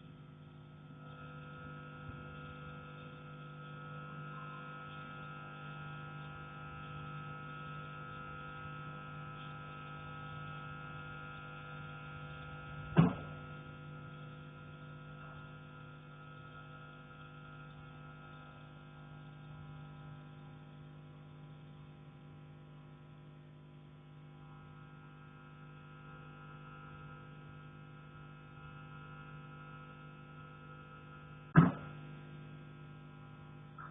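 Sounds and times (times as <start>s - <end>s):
steady hum: 0.0s - 33.9s
knock on metal pipe: 31.6s - 31.9s.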